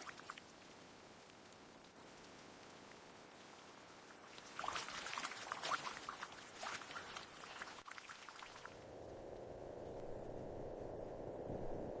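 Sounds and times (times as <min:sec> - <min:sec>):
soft hiss: 0:00.0 - 0:12.0.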